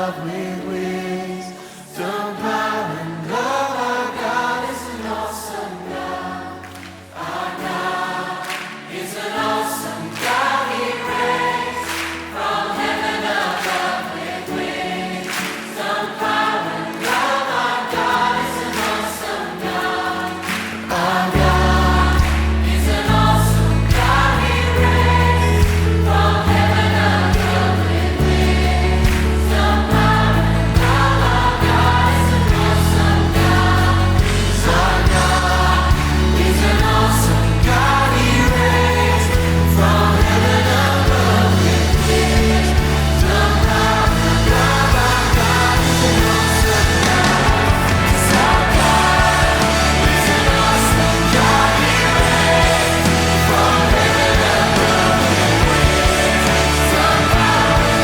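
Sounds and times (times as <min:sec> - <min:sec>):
gospel choir singing: 0:00.0 - 0:58.0
instrumental backing: 0:19.6 - 0:58.0
heavy bass line: 0:21.4 - 0:58.0.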